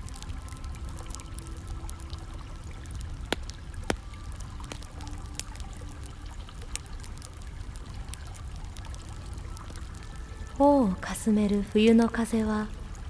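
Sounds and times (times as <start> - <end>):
pouring trickling water: 0.0 - 13.0
wood fire crackling: 0.0 - 13.0.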